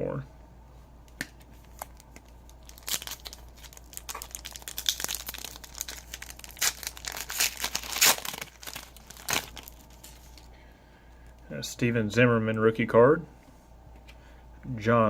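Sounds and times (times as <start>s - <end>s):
card pack wrapper crinkling: 1.6s - 10.5s.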